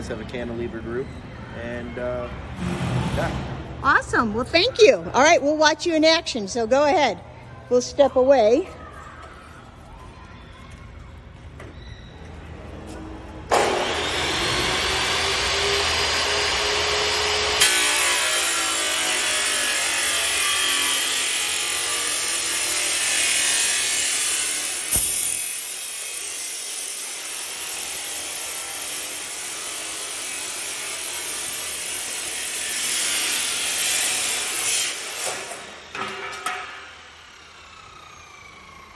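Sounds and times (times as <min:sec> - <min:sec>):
saw cutting wood: 0:13.5 - 0:38.9.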